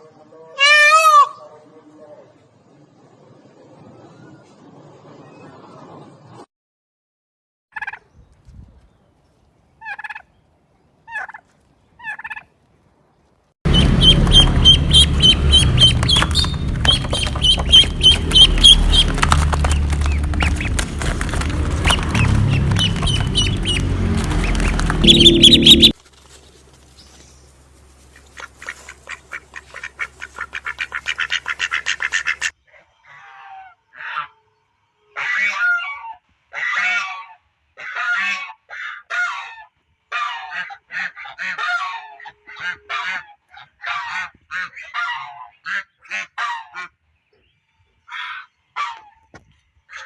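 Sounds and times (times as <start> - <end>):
fowl calling: 0.5 - 1.7, 13.7 - 20.8, 21.9 - 26.0, 35.1 - 47.0, 48.1 - 49.3
low rumble: 13.7 - 26.0.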